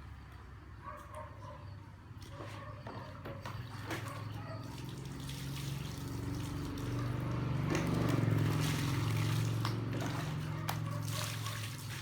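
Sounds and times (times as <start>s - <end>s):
water running and trickling: 4.7s - 12.0s.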